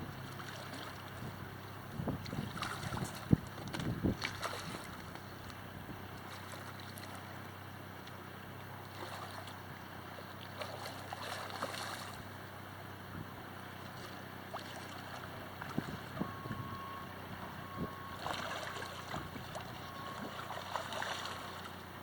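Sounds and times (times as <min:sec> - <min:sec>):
river water rushing: 0:00.0 - 0:22.0
wind buffeting microphone: 0:01.0 - 0:06.1, 0:15.2 - 0:20.6.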